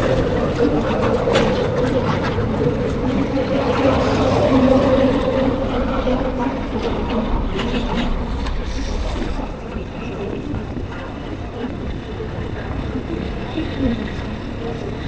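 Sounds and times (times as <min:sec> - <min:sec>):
wind rush: 0:00.0 - 0:15.0.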